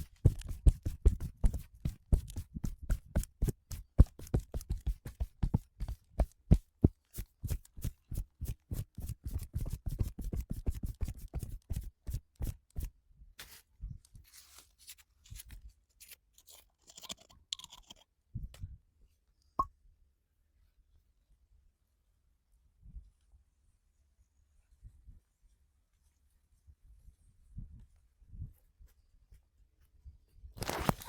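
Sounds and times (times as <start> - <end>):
hands striking body rapidly: 0.0 - 11.9
rubbing and patting: 0.0 - 17.0.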